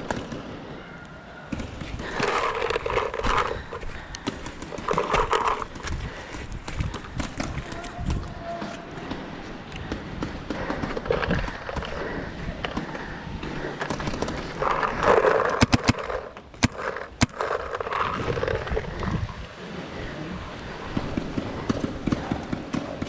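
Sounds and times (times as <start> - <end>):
footsteps: 1.5 - 19.6
gear rustling: 1.6 - 19.6.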